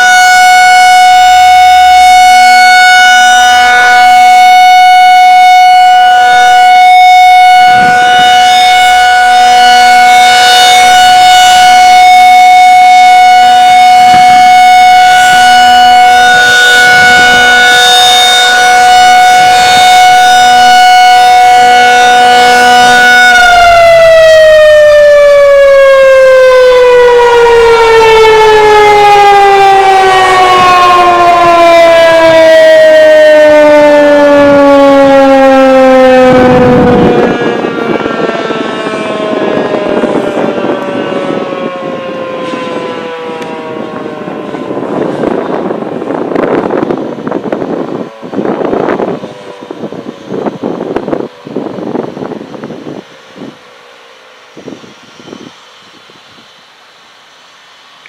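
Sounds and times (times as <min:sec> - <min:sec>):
rotating warning siren: 0:00.0 - 0:58.0.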